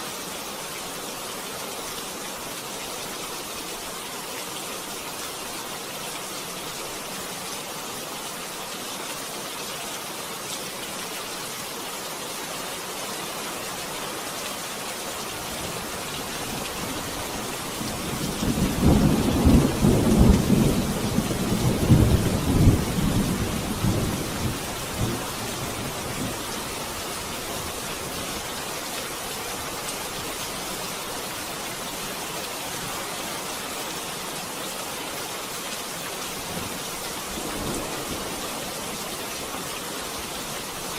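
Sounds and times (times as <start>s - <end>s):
rain hissing: 13.1s - 40.9s.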